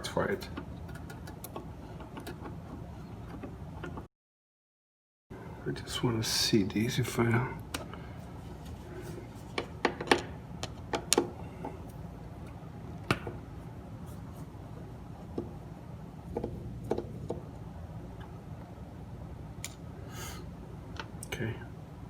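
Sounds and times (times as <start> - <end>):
steady low hum: 5.3 - 22.0.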